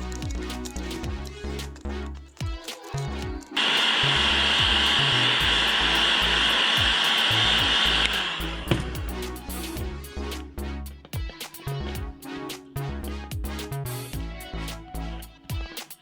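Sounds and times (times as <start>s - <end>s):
background music with a beat: 0.0s - 4.0s, 4.6s - 16.0s
hot-air blower whining: 3.6s - 9.0s.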